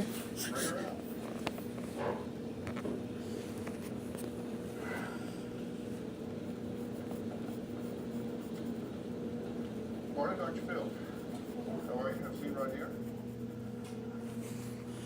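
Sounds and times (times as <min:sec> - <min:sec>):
low electrical hum: 0:00.0 - 0:15.0
pencil scratching on paper: 0:06.5 - 0:09.0, 0:10.0 - 0:13.6.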